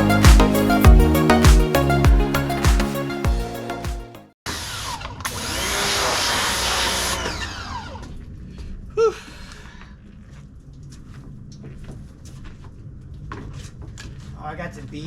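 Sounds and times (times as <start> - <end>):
background music: 0.0 - 4.4.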